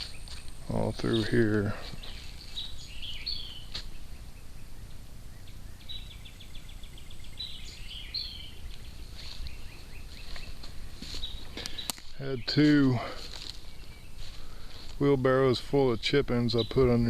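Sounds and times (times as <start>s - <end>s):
low steady background noise: 0.0s - 17.0s
songbirds chirping: 0.0s - 17.0s
bird trill: 2.0s - 14.7s.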